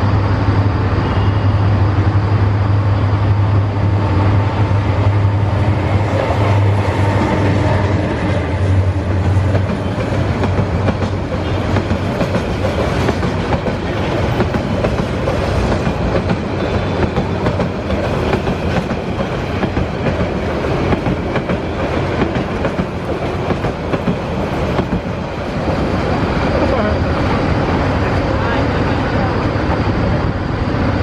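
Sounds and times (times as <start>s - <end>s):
train wheels rumbling on rails: 0.0s - 31.0s
clickety-clack over rail joints: 4.0s - 29.9s.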